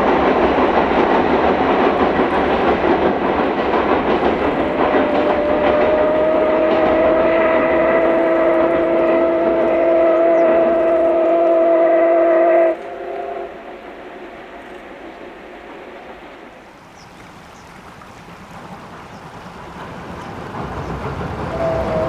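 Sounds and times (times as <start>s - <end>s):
passing train noise: 0.0s - 22.0s
steam whistle long blast: 4.7s - 14.6s, 21.5s - 22.0s.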